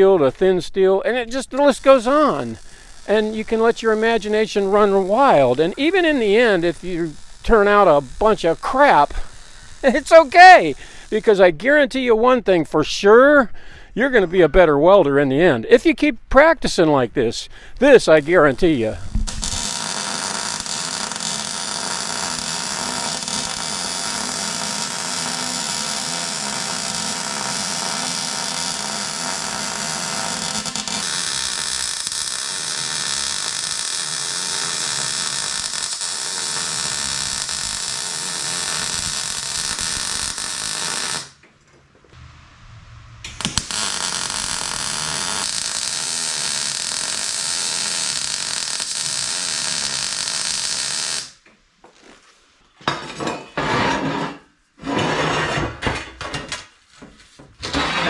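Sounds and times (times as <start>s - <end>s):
metalworking on steel tubing: 1.2s - 11.4s, 17.8s - 41.3s, 42.2s - 47.9s.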